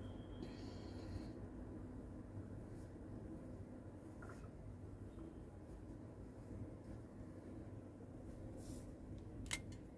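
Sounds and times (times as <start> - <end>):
low steady hum: 0.0 - 9.9
soft rustle: 2.4 - 9.2.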